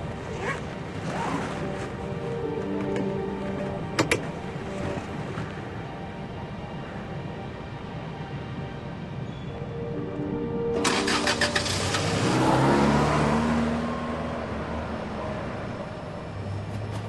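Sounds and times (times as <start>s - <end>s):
soft background music: 0.0s - 17.0s
car engine starting and revving: 10.8s - 15.8s.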